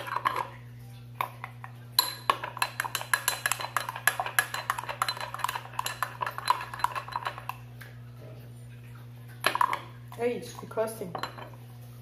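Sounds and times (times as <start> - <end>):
spoon clinking against container: 0.0 - 0.6, 1.2 - 7.6, 9.4 - 11.6.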